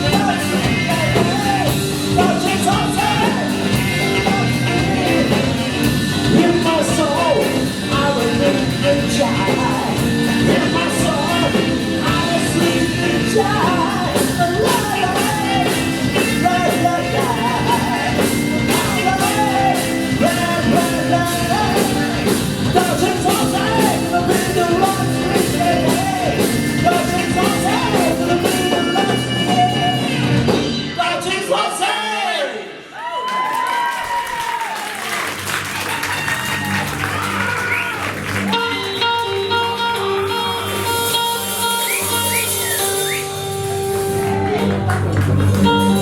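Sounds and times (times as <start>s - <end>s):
person singing lead: 0.0s - 30.2s
live rock band playing: 0.0s - 31.5s, 35.1s - 46.0s.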